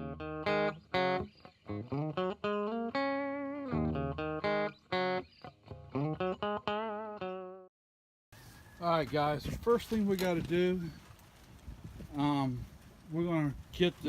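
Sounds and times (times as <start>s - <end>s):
plucked guitar tune: 0.0s - 7.7s.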